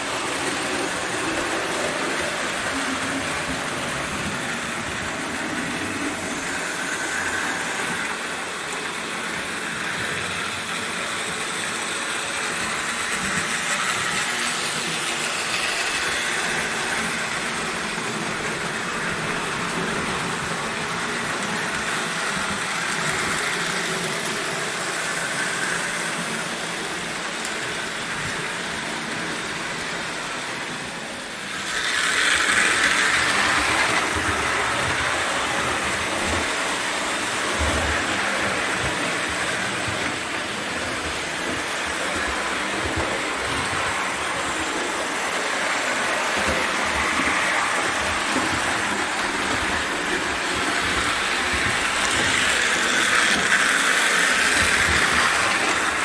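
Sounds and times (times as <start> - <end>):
toy train motor whirring on track: 0.0 - 56.0.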